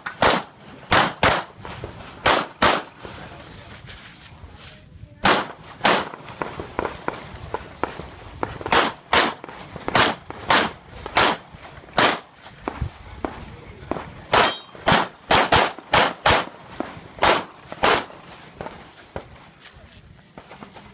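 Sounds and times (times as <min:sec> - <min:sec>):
pistol shots: 0:00.0 - 0:01.6, 0:02.2 - 0:03.0, 0:05.2 - 0:12.3, 0:13.3 - 0:18.8.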